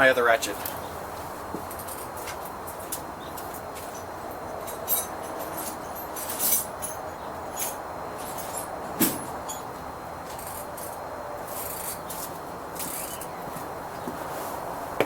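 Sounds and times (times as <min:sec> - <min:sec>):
hand tools clinking: 0:01.7 - 0:09.7, 0:10.3 - 0:13.4.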